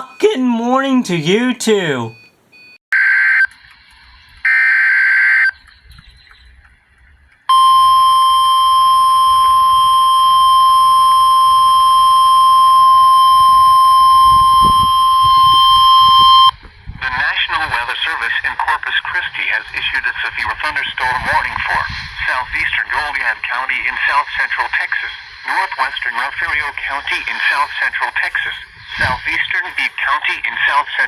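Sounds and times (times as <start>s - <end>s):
steady warning alarm tone: 7.5s - 16.5s.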